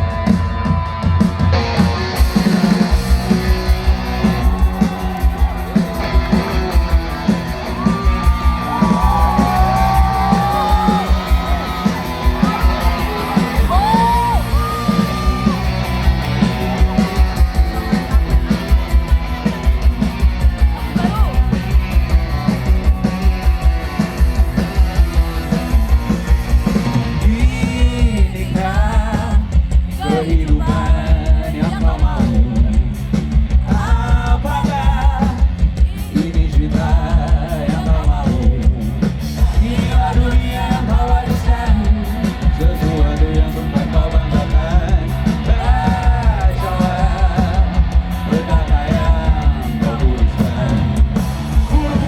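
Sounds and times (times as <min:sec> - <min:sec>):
fast drum beat: 0:00.0 - 0:52.0
guitars: 0:00.0 - 0:52.0
rock band playing: 0:00.0 - 0:52.0
person singing or shouting: 0:07.4 - 0:18.6, 0:20.6 - 0:24.1, 0:27.2 - 0:32.7, 0:33.7 - 0:38.6.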